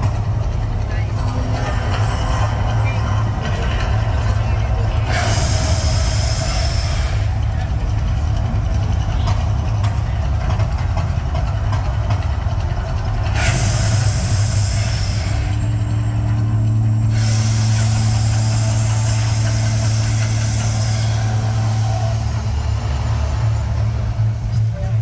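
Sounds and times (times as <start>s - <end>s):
deep rumble: 0.0s - 25.0s
long hissing whooshes: 3.9s - 7.8s, 13.3s - 24.3s.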